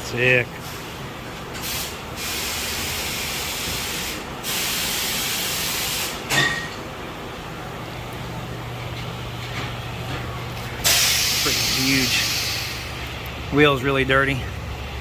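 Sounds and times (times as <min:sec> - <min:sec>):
compressed air hissing: 0:01.6 - 0:06.3, 0:10.8 - 0:13.0.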